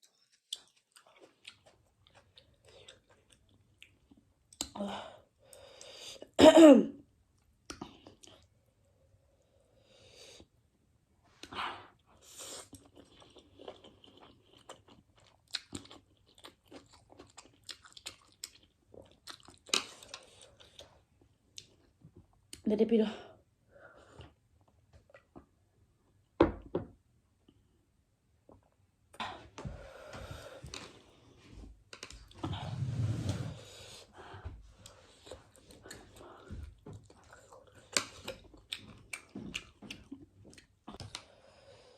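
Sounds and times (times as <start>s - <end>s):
person chewing food: 0.0s - 4.8s, 7.4s - 8.6s, 11.4s - 22.0s, 33.9s - 41.4s.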